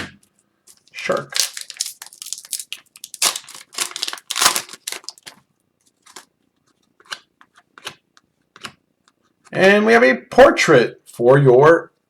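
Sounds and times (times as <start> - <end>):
foil wrapper crinkling and tearing: 0.7 - 5.4, 6.0 - 6.3.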